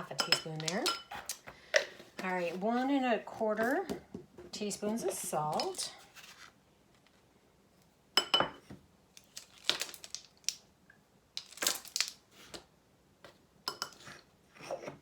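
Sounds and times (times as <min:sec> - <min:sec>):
measuring spoon clinking on containers: 0:00.0 - 0:01.3.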